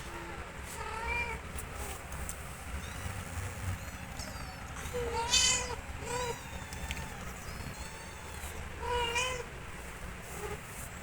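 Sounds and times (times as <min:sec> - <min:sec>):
cat meowing: 0:02.8 - 0:09.5.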